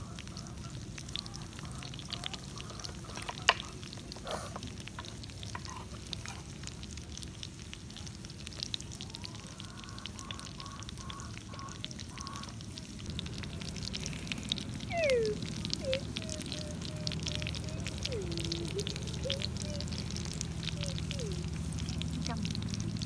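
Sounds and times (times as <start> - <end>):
food sizzling on a hot rock: 0.0 - 23.0
small crackling pops: 0.0 - 23.0
steady low rumble: 12.9 - 23.0.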